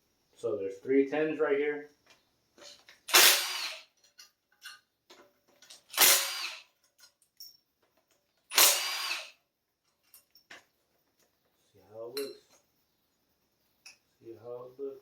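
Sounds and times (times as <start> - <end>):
power tool spinning out bolts: 2.6 - 4.8, 5.5 - 7.1, 8.4 - 9.4
small metal clicks: 4.0 - 6.1, 6.8 - 8.5, 9.8 - 11.4.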